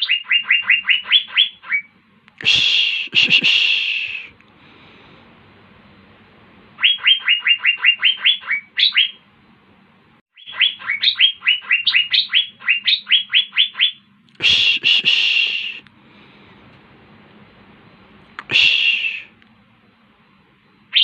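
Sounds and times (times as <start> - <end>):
bird whistled notes: 0.0 - 1.9, 6.8 - 9.2, 10.4 - 15.8, 18.5 - 19.3
harsh rasping bird call: 0.0 - 4.4, 6.8 - 9.2, 10.4 - 15.8, 18.5 - 19.4.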